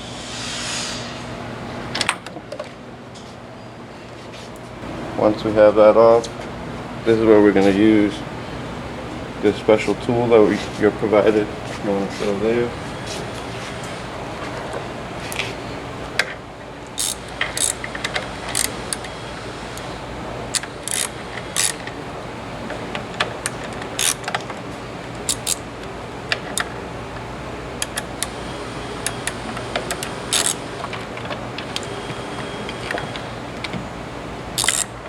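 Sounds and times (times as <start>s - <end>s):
steady low hum: 4.8s - 35.0s
hand tool metal clicks: 17.0s - 19.1s, 20.5s - 21.8s, 23.4s - 24.4s, 25.2s - 25.6s, 27.8s - 28.3s, 29.0s - 30.6s, 34.6s - 34.9s.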